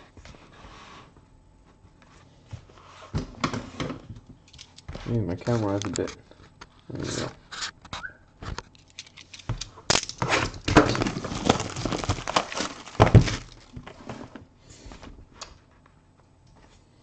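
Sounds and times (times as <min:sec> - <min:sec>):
card packaging crackling: 0:09.8 - 0:14.0.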